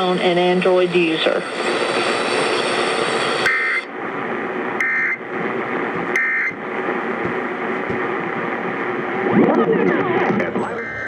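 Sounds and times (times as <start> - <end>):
radio static: 0.0 - 11.0.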